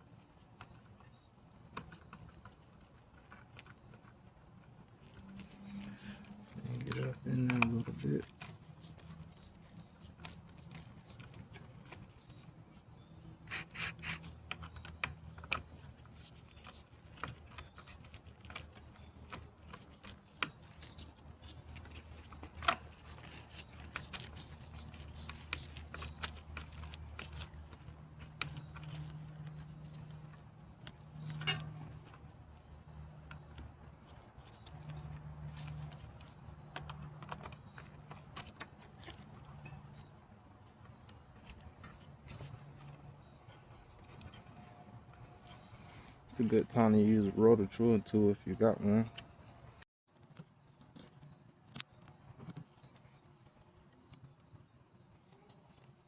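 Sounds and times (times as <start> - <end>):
hand tool clicks and rubbing: 30.8 - 32.2.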